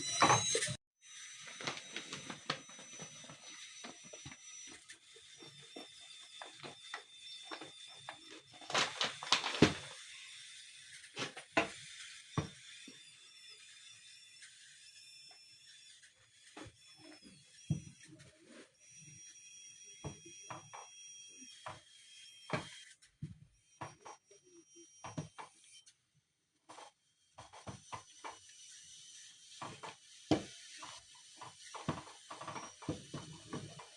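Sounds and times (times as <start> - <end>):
high squeaky tones: 0.0 - 9.4.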